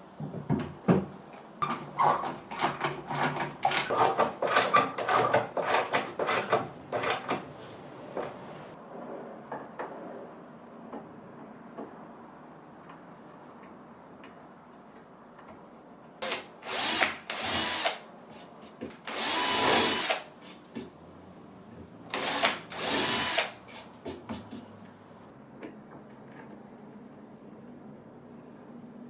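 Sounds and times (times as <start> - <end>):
power drill running: 1.6 - 7.8, 16.2 - 18.0, 18.9 - 20.6, 22.1 - 24.0.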